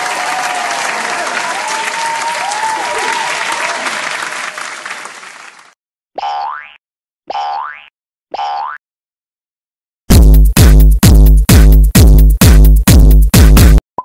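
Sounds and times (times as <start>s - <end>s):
crowd applause: 0.0s - 5.8s
cartoon boing: 6.2s - 8.8s.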